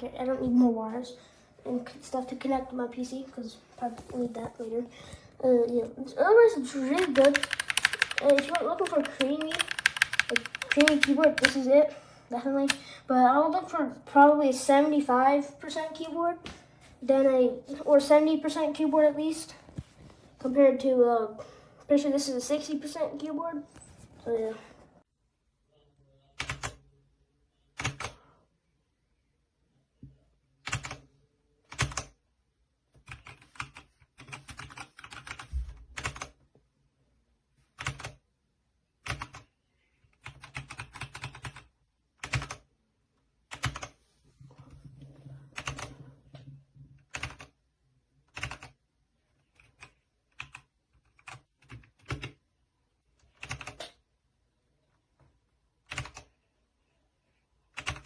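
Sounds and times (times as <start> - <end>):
mechanical keyboard typing: 6.9 - 11.7, 26.4 - 26.8, 27.8 - 28.2, 30.6 - 31.0, 31.7 - 32.1, 33.0 - 36.4, 37.8 - 38.2, 39.0 - 39.5, 40.2 - 42.7, 43.5 - 44.0, 45.6 - 46.0, 47.0 - 47.5, 48.3 - 48.8, 49.5 - 52.4, 53.3 - 53.9, 55.9 - 56.3, 57.8 - 58.0.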